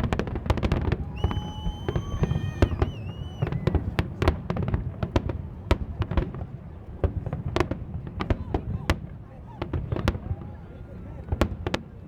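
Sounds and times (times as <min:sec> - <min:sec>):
fireworks bursting: 0:00.0 - 0:05.5
high whistling tone: 0:01.1 - 0:03.7.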